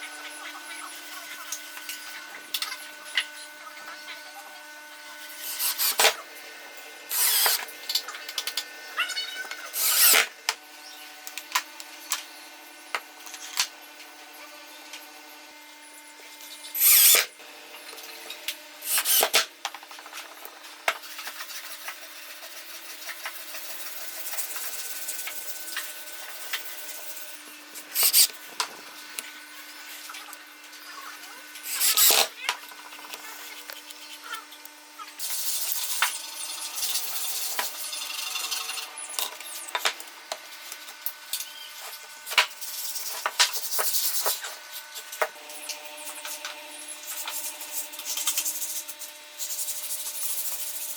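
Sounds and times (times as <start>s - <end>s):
power tool bursts: 5.3s - 6.3s, 7.1s - 8.0s, 9.5s - 10.4s, 16.6s - 17.4s, 18.4s - 19.5s, 27.8s - 28.3s, 31.6s - 32.4s.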